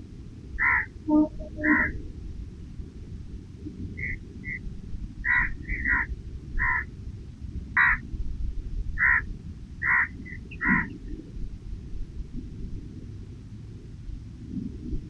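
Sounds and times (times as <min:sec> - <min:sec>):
steady low rumble: 0:00.0 - 0:15.0
animal short sharp calls: 0:00.6 - 0:02.0, 0:05.3 - 0:06.8, 0:07.8 - 0:08.0, 0:09.0 - 0:09.2, 0:09.8 - 0:10.9.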